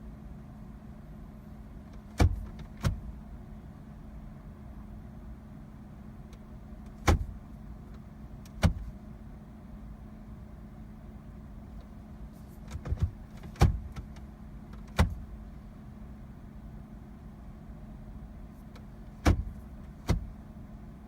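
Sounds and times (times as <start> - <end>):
steady low hum: 0.0 - 21.0
cabin controls clicking and knocking: 8.5 - 8.9, 12.7 - 14.2, 19.2 - 20.3.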